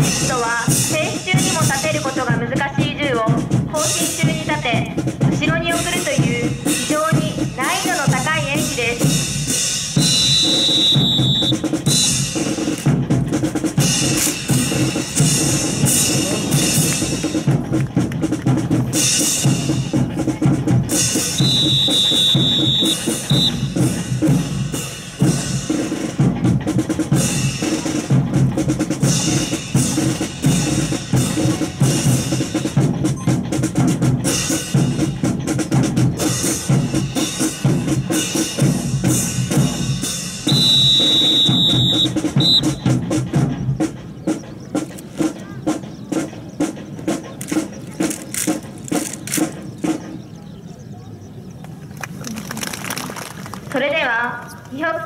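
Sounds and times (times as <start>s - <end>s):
drum-driven music: 0.0s - 50.4s
high whistle blast: 10.0s - 12.0s, 21.3s - 23.7s, 40.4s - 42.9s.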